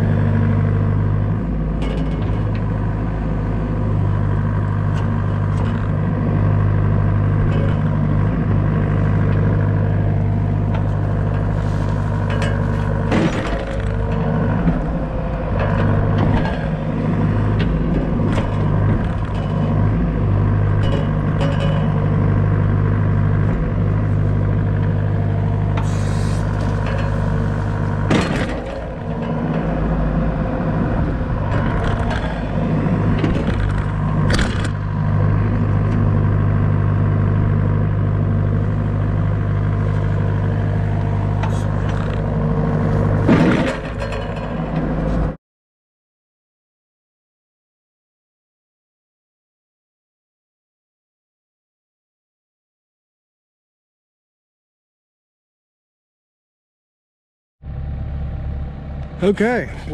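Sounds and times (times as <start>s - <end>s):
excavator diesel engine running: 0.0s - 45.4s, 57.6s - 59.9s
metallic clanks and scrapes: 10.8s - 14.0s, 25.8s - 29.7s.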